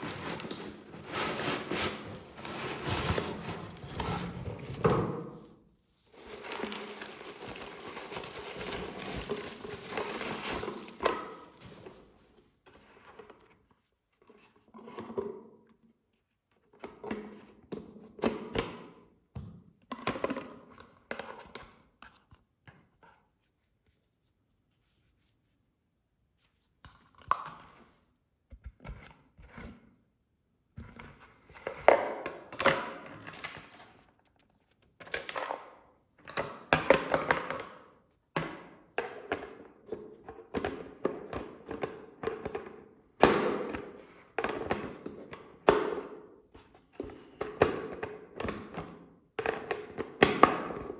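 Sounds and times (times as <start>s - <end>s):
packaging rustling: 0.0s - 5.1s, 6.1s - 12.0s
handling noises and light knocks: 0.0s - 15.3s.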